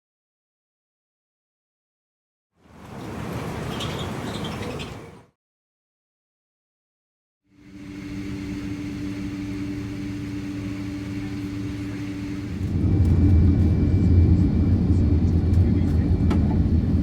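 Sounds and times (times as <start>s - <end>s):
jet engines rumbling inside cabin: 2.8s - 5.3s, 7.6s - 17.0s.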